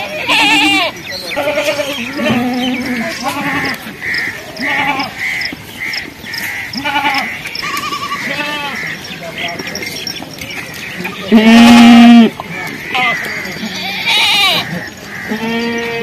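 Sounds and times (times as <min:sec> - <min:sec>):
goat kids bleating: 0:00.0 - 0:05.4, 0:06.4 - 0:08.9, 0:11.2 - 0:16.0.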